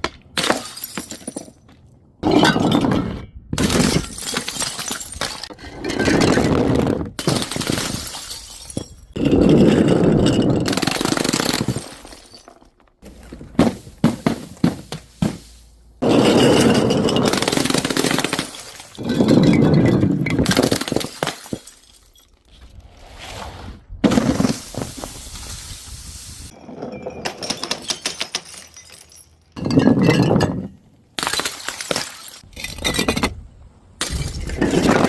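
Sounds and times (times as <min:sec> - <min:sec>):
glass bottles breaking: 0:00.4 - 0:01.6, 0:03.6 - 0:06.6, 0:07.2 - 0:22.4, 0:26.7 - 0:33.3
glass shards clinking: 0:07.5 - 0:09.3.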